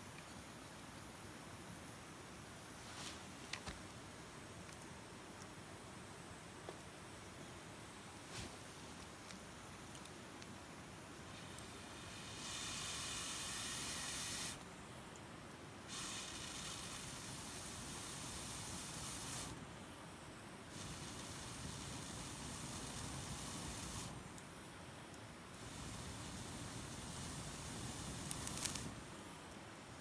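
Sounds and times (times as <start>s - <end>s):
low rustle of campfire: 1.8s - 30.0s
hissing pushes of air: 11.3s - 14.6s, 15.9s - 19.6s, 20.7s - 24.2s, 25.6s - 29.2s.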